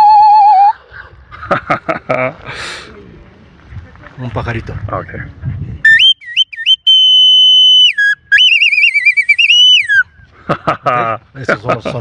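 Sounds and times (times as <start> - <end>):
whistle imitating birdsong: 0.0 - 0.8, 5.9 - 10.1.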